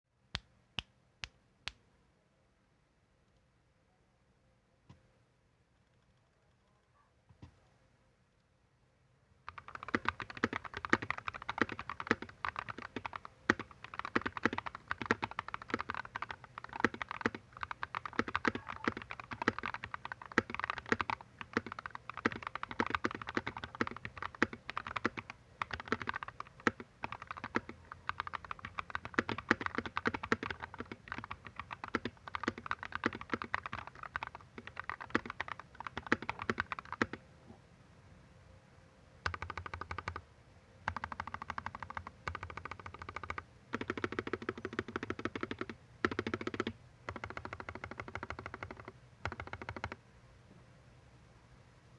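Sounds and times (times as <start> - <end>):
mechanical keyboard typing: 9.5 - 37.2, 39.2 - 40.2, 40.9 - 50.0.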